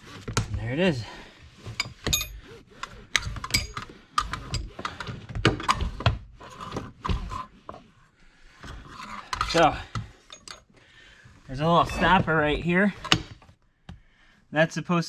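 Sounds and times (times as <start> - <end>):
metal clinks and knocks: 1.8 - 5.8, 9.0 - 10.7.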